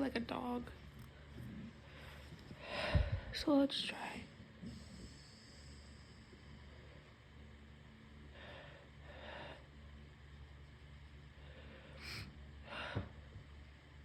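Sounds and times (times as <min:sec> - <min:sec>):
congested nose breathing: 0:04.6 - 0:07.1.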